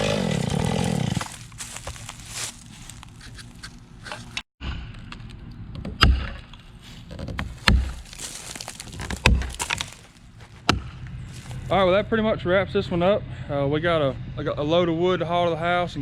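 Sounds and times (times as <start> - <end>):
heavy wooden thuds: 7.1 - 11.1.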